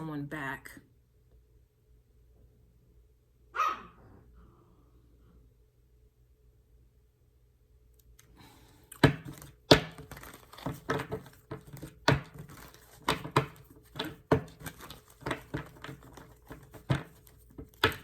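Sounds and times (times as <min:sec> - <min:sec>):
cards being shuffled: 0:09.0 - 0:18.0.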